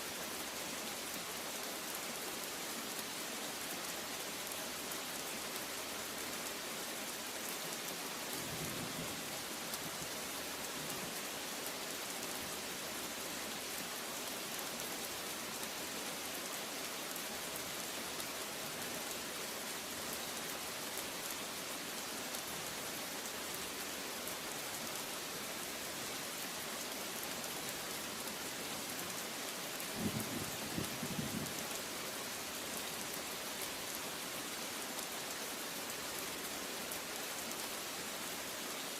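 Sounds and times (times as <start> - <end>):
rain pattering: 0.3 - 38.9
low rumble of thunder: 29.9 - 31.6.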